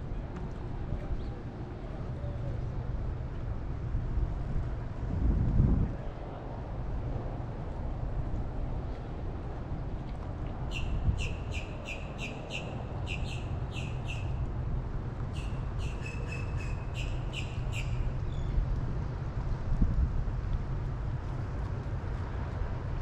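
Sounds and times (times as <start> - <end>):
bird chirping: 10.7 - 14.3, 15.4 - 18.5.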